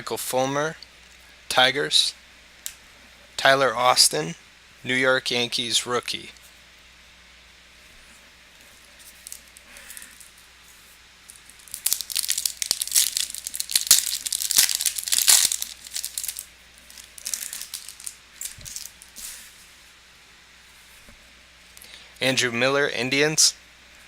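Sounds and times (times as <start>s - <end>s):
cards rustling: 8.6s - 10.4s, 11.3s - 19.6s
foil wrapper crinkling: 8.6s - 10.5s, 11.2s - 19.6s.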